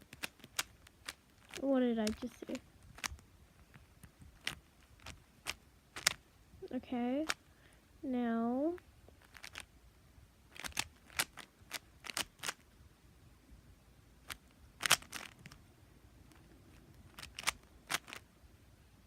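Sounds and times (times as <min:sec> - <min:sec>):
rubik's cube clicking: 0:00.0 - 0:06.2, 0:07.2 - 0:07.4, 0:09.1 - 0:09.7, 0:10.5 - 0:12.7, 0:14.2 - 0:15.6, 0:16.3 - 0:18.2.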